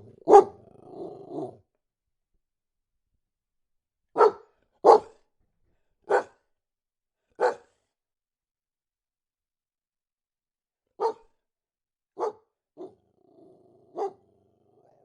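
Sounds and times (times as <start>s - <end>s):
dog barking: 0.0s - 1.6s, 4.1s - 5.2s, 6.0s - 6.4s, 7.4s - 7.8s, 11.0s - 11.3s, 12.2s - 13.0s, 13.9s - 14.2s.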